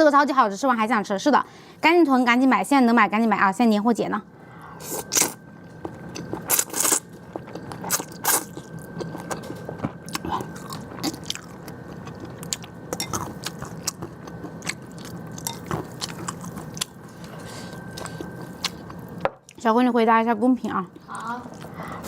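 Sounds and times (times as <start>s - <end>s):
person biting and chewing food: 6.1s - 19.2s.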